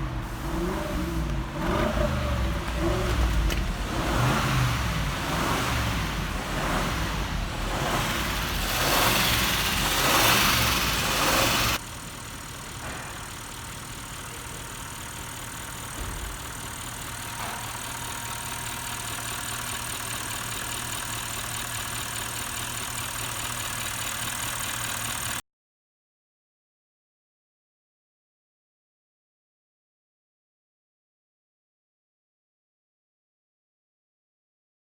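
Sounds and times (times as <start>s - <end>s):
car engine idling: 0.0s - 25.4s
car engine revving: 0.0s - 25.4s.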